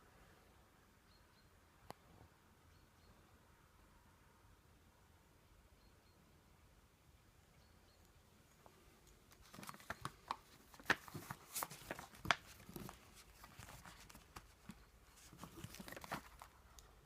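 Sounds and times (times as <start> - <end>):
packaging rustling: 9.3 - 16.6
packaging crinkling and clicking: 9.3 - 16.9.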